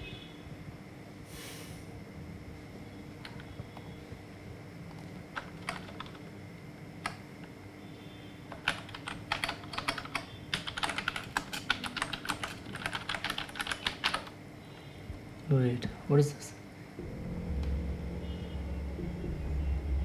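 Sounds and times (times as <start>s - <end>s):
faint hum: 0.0s - 20.0s
typing on keyboard: 4.9s - 6.2s, 8.5s - 14.4s.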